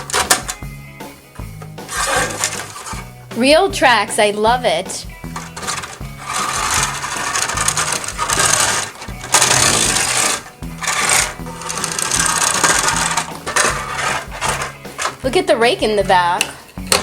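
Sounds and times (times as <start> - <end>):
toy bulldozer tracks rattling: 0.0 - 0.6, 1.9 - 3.0, 5.4 - 15.2
soft background music: 0.0 - 17.0.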